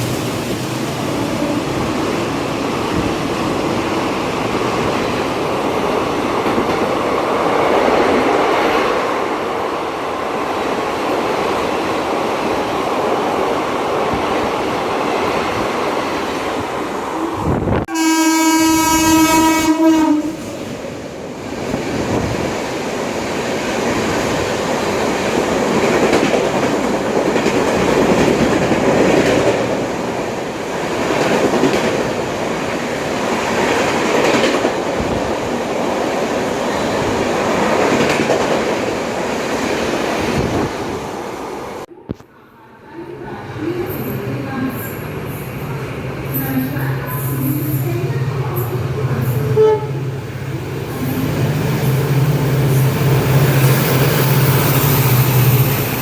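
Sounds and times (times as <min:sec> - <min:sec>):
train horn blast: 0:17.9 - 0:20.5, 0:49.5 - 0:50.0.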